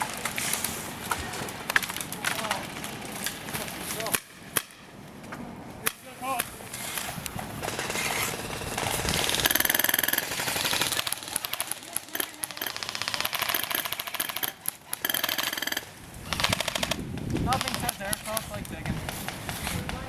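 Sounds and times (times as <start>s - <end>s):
airsoft guns full-auto bursts: 7.4s - 18.5s.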